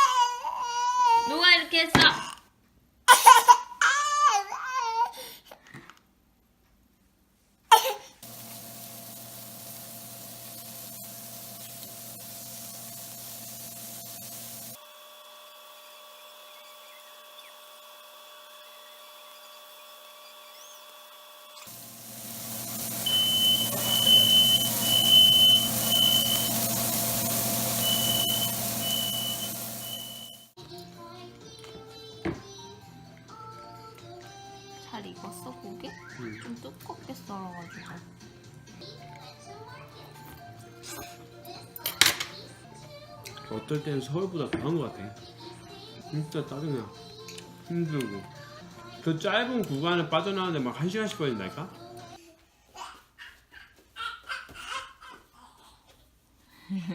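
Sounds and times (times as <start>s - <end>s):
young child crying: 0.0s - 1.5s, 3.1s - 5.4s
fan humming: 8.2s - 14.8s, 21.5s - 30.6s
smoke alarm beeping: 8.2s - 14.8s, 21.7s - 30.6s
steady hiss: 8.2s - 14.8s, 21.6s - 30.6s.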